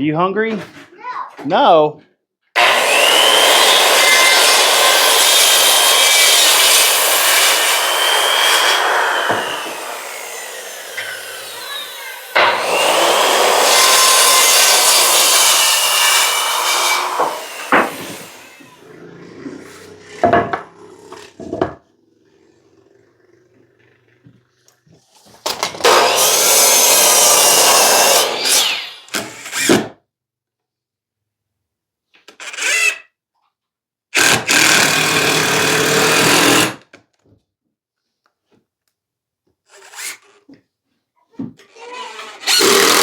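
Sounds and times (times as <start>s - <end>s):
electric saw cutting wood: 2.6s - 21.8s, 25.4s - 29.9s, 34.2s - 36.8s, 41.7s - 43.0s.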